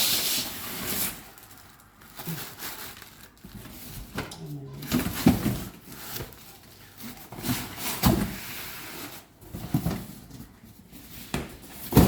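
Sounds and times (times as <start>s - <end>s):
rustling while unpacking: 0.0s - 12.0s.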